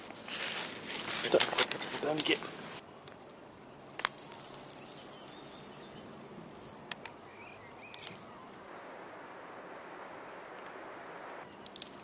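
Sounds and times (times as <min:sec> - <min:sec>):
outdoor background hiss: 0:00.0 - 0:12.0
bird chirping: 0:04.6 - 0:06.2, 0:07.1 - 0:08.8.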